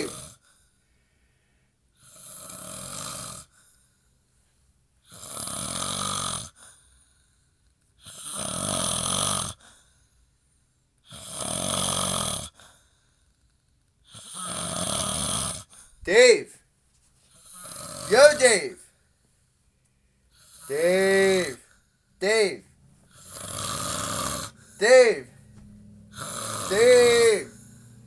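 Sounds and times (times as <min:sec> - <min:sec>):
man snoring heavily: 0:00.0 - 0:00.4, 0:02.0 - 0:03.6, 0:05.0 - 0:06.8, 0:08.0 - 0:09.8, 0:11.0 - 0:12.8, 0:14.1 - 0:15.8, 0:17.4 - 0:18.7, 0:20.4 - 0:25.4, 0:26.0 - 0:28.0.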